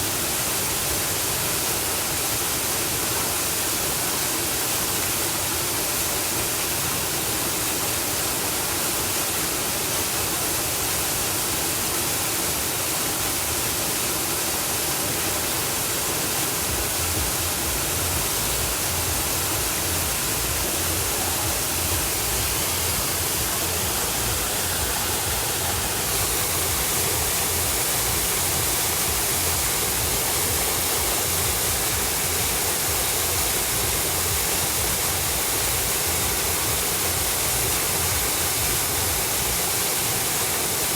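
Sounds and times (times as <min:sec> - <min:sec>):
waterfall rushing: 0:00.0 - 0:40.9
low rumble: 0:17.9 - 0:28.6.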